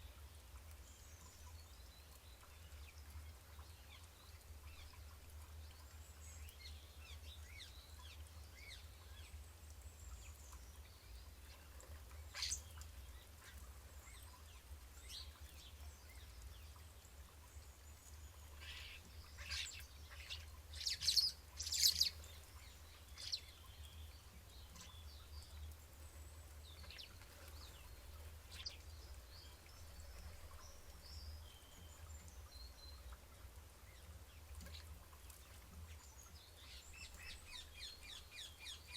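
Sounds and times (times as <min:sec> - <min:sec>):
birds chirping and calling: 0:12.3 - 0:12.8, 0:18.6 - 0:24.0.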